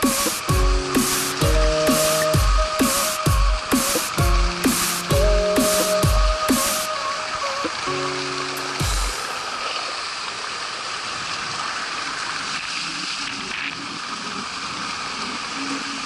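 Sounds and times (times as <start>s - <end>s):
music note: 0.0s - 9.4s
rushing water: 0.0s - 16.0s.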